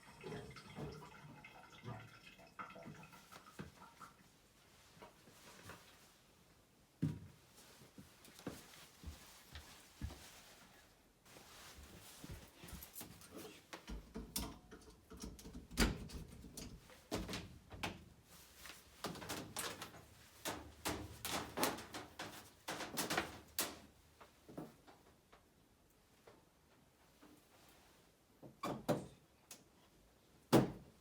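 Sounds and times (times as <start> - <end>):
clicks and knocks on plumbing fittings: 13.8 - 18.0.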